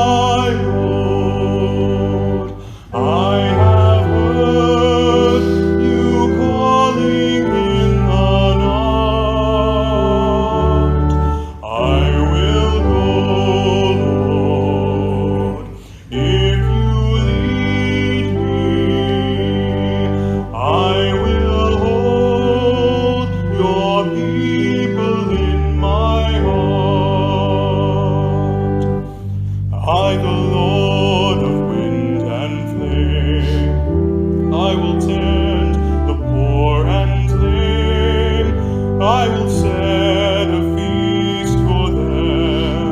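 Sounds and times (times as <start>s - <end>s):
person singing with vibrato: 0.0s - 42.9s
sustained instrumental accompaniment: 0.0s - 42.9s
short breaths: 2.6s - 2.9s, 15.8s - 16.1s, 29.1s - 29.7s.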